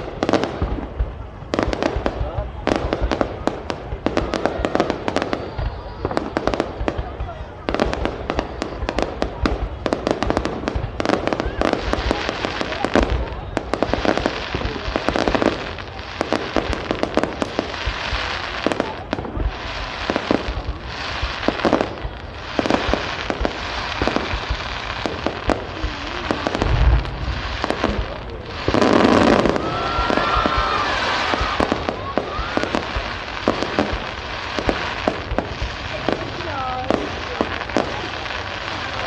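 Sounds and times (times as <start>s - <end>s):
fireworks bangs and crackling: 0.0s - 39.0s
deep firework boom: 21.8s - 38.0s.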